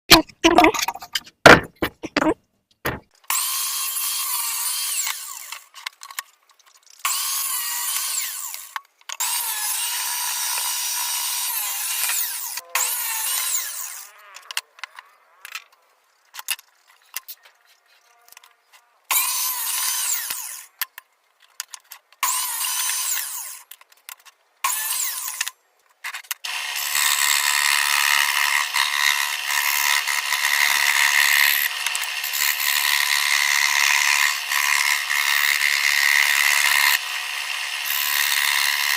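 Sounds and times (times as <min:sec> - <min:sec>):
power tool working wood: 0:07.1 - 0:14.1, 0:26.4 - 0:38.9.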